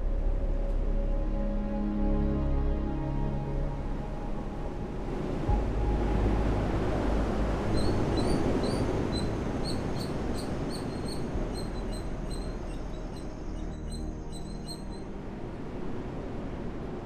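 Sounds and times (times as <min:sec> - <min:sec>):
steady noisy background: 0:03.2 - 0:17.0
small bird chirping: 0:07.8 - 0:15.0.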